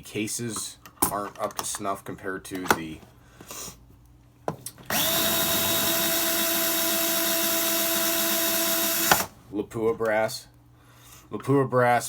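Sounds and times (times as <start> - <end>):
power drill whining: 4.9 - 9.4.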